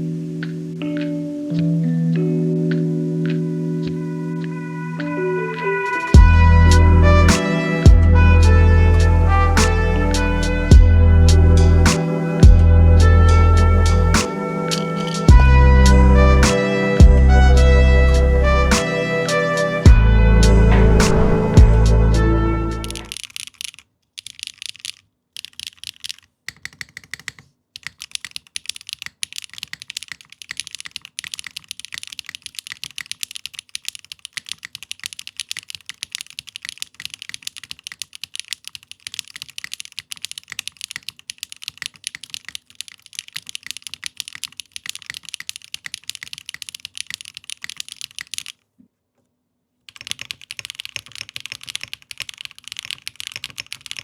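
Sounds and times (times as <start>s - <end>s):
mechanical keyboard typing: 22.8s - 48.6s, 49.9s - 54.0s.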